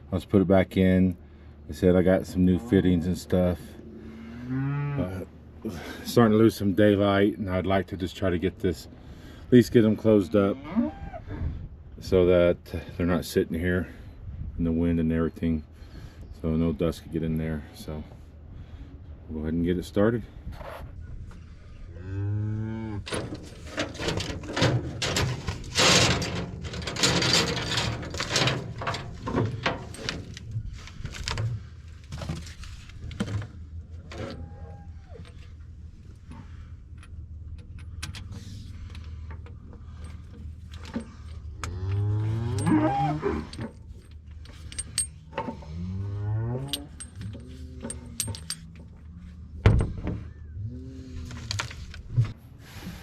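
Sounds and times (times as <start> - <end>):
cattle mooing: 3.9 - 5.2, 10.4 - 11.2, 22.0 - 23.1, 41.7 - 43.6, 45.6 - 47.0
metallic clanks and rattles: 23.0 - 34.5, 35.2 - 50.3.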